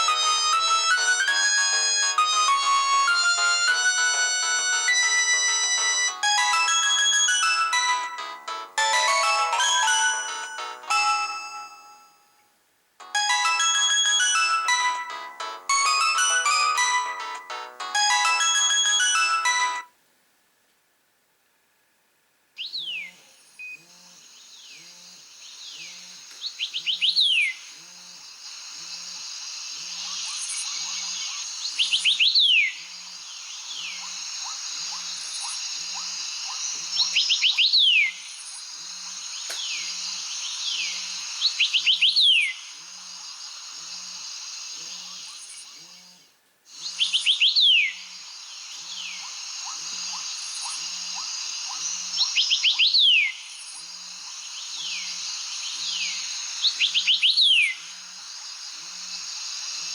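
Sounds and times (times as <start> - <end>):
background chirping: 22.6 - 59.9.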